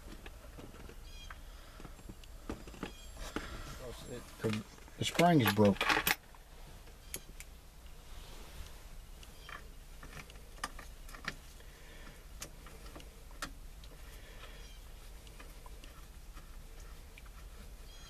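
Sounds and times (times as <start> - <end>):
low steady hum: 0.0 - 18.0
small parts clicking and tapping: 9.2 - 14.5.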